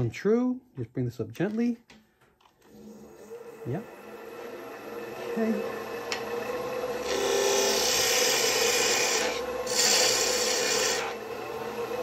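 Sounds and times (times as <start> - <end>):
lathe humming: 2.7 - 12.0.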